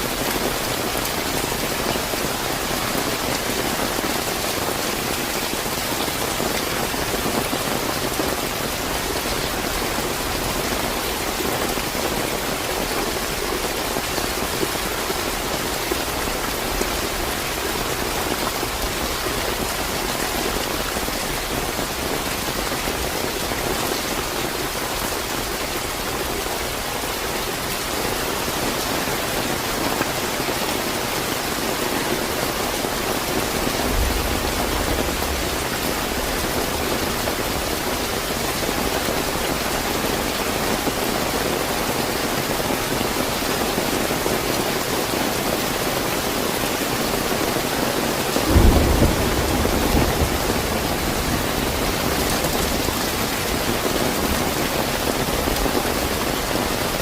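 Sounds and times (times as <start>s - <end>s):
heavy rain pattering: 0.0s - 57.0s.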